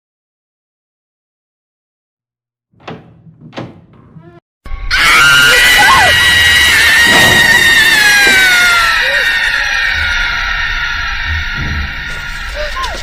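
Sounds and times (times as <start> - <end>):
sharp knocks: 2.8 - 4.4
high-pitched scream: 4.7 - 13.0.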